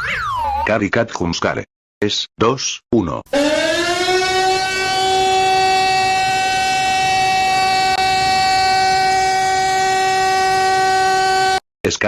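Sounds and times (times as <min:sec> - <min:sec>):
steady alarm tone: 0:03.3 - 0:11.6.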